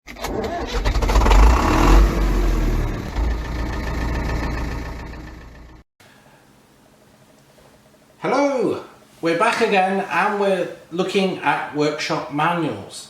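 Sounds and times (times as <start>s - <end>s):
engine running with deep rumble: 0.2s - 5.8s.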